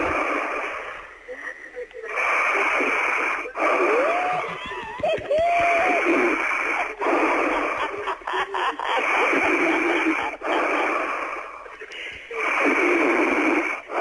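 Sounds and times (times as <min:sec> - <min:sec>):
woman snoring over phone: 0:12.4 - 0:14.0.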